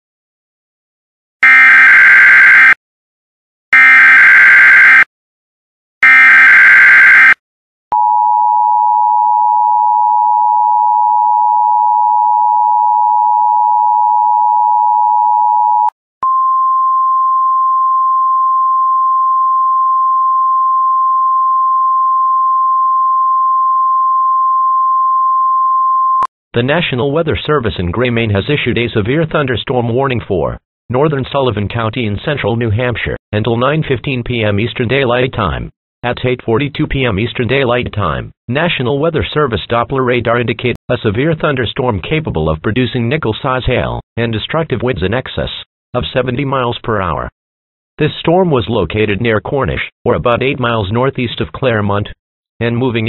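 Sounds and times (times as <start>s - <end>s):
steady single-pitch alert tone: 1.4s - 2.8s, 3.8s - 5.1s, 6.0s - 7.4s.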